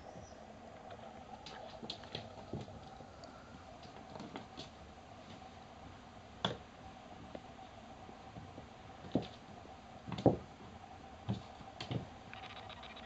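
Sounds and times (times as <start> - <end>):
kittens thumping and tapping: 11.3 - 12.1.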